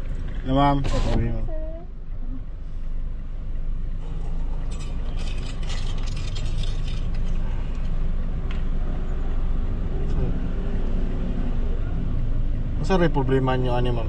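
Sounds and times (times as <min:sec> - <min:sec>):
street traffic rumble: 0:00.0 - 0:14.0
light clinks and rattles: 0:04.1 - 0:08.0.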